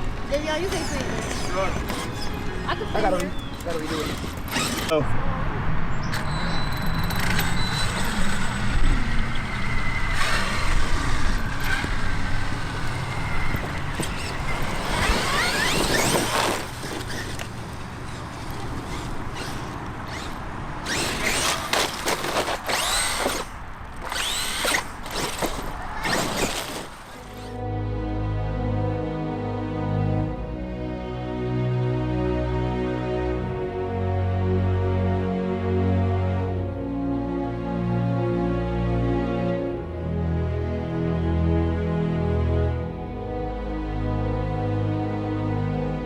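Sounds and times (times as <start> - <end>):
electric motors whining: 0.0 - 5.0, 6.0 - 27.6
toy trucks running on ground: 0.0 - 5.0, 6.1 - 27.6.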